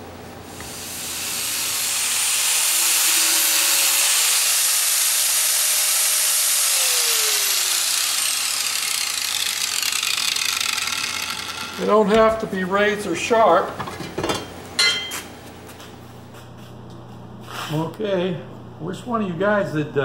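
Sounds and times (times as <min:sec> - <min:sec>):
power grinder grinding steel: 0:00.6 - 0:13.1.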